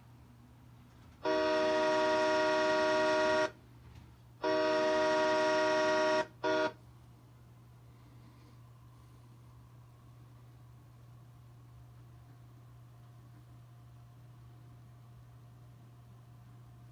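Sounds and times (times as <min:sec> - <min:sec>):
train horn blasts: 0:01.2 - 0:03.6, 0:04.4 - 0:06.8.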